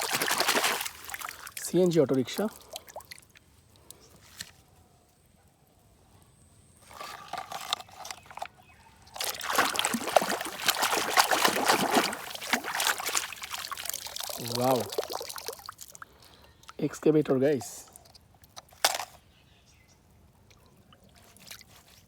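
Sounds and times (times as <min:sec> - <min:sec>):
water splashing and trickling: 0:00.0 - 0:04.0, 0:06.8 - 0:18.7, 0:20.4 - 0:22.0.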